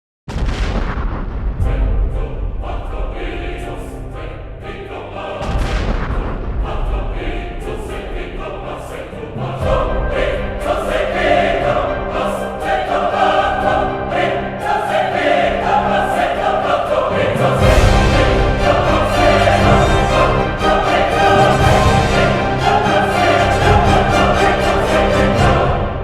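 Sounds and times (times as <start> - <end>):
choir singing: 1.6 - 26.0.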